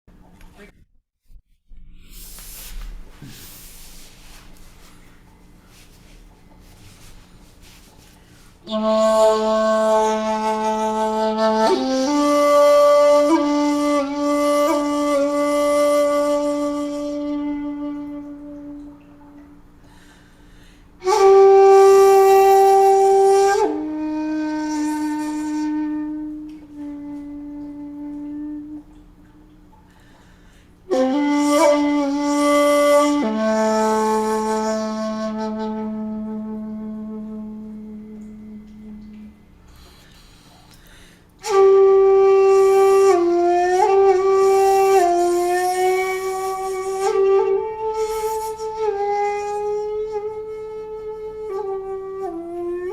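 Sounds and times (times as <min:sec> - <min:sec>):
bamboo flute long held notes: 0:05.7 - 0:52.9.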